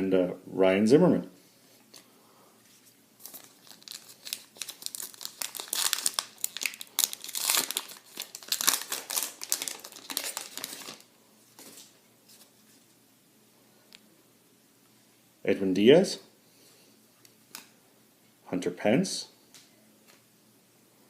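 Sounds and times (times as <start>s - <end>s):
card pack wrapper crinkling: 3.2s - 11.9s.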